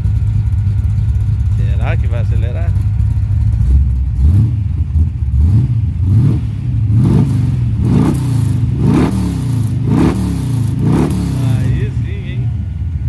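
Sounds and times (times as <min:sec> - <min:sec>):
engine revving in throttle blips: 0:03.5 - 0:13.0.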